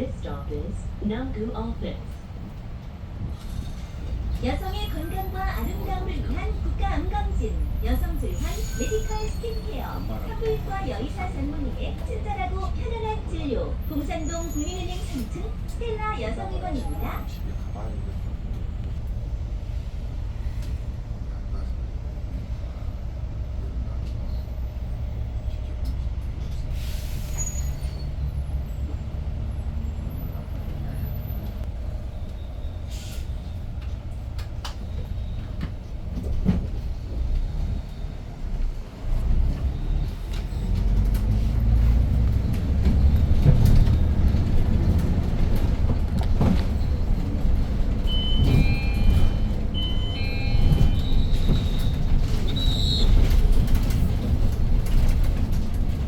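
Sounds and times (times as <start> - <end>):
bus engine and road rumble: 0.0 - 56.0
short high beeps: 48.1 - 51.4.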